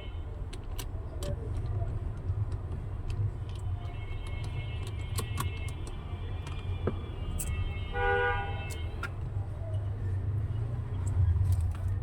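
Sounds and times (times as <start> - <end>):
low rumble of traffic: 0.0 - 12.0
vehicle horn: 3.9 - 9.0.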